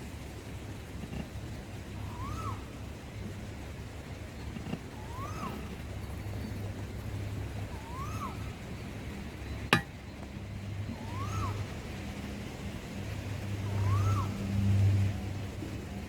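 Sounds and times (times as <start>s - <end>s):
low engine-like hum: 0.0s - 16.0s
call rising and falling in pitch: 2.0s - 2.8s, 5.0s - 5.8s, 7.7s - 8.6s, 10.9s - 11.9s, 13.6s - 14.6s.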